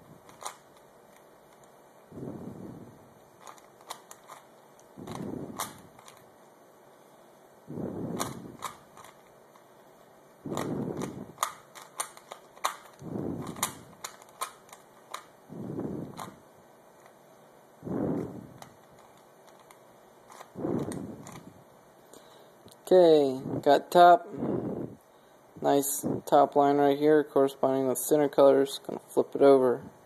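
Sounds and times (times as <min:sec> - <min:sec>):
plastic puzzle cube clicking: 0:00.2 - 0:01.7, 0:03.4 - 0:06.3, 0:08.2 - 0:09.7, 0:10.5 - 0:15.4, 0:18.6 - 0:21.4.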